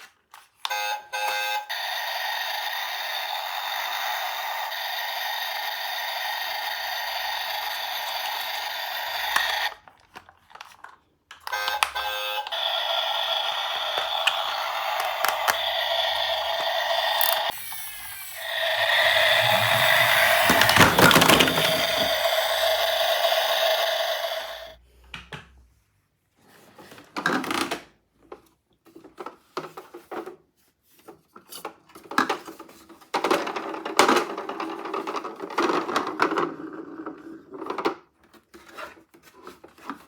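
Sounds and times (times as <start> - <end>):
electronic toy tone: 0.7 - 9.7, 11.5 - 24.8
plastic toy cars clacking: 1.9 - 24.8, 26.9 - 40.0.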